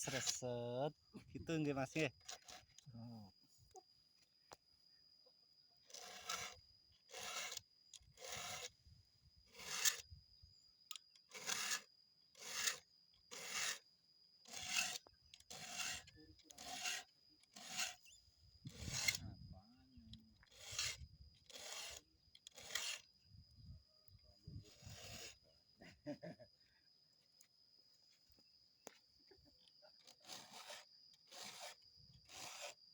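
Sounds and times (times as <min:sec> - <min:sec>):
file rasping on chainsaw chain: 0:00.0 - 0:00.4, 0:01.9 - 0:02.8, 0:05.9 - 0:08.8, 0:09.4 - 0:10.1, 0:11.2 - 0:19.4, 0:20.1 - 0:23.2, 0:24.6 - 0:25.5, 0:29.9 - 0:32.9.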